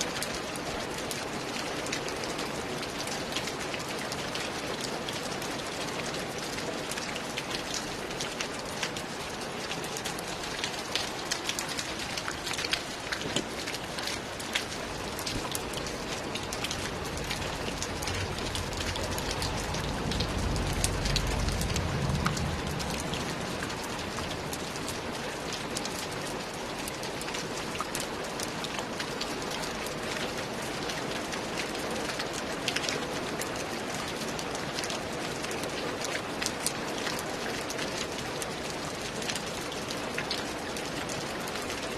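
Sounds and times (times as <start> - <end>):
steady rain falling: 0.0 - 41.9
low rumble: 16.9 - 24.7.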